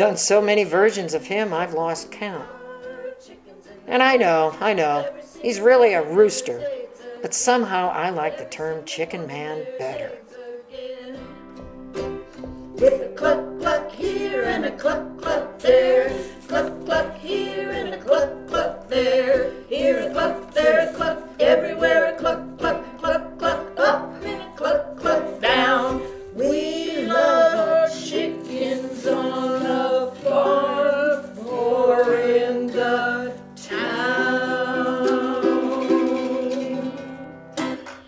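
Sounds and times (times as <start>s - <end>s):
person singing: 0.0s - 11.4s, 12.8s - 37.8s
strummed string instrument: 11.1s - 38.0s.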